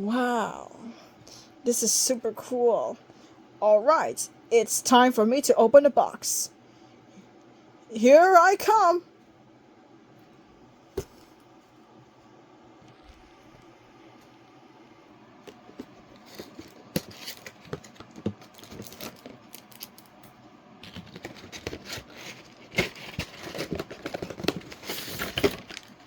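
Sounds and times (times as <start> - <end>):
packaging rustling: 15.5 - 20.2, 20.8 - 26.0.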